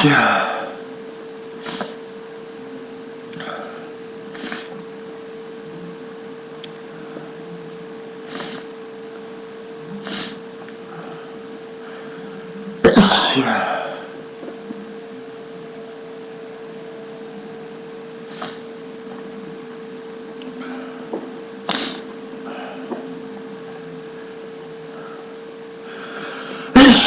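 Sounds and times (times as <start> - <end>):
person sneezing: 0.0 - 0.8, 1.6 - 2.0, 3.4 - 4.7, 8.3 - 8.7, 10.0 - 10.4, 12.8 - 14.1, 18.3 - 18.7, 21.6 - 22.0, 26.6 - 27.0
faint breaths: 24.2 - 26.8.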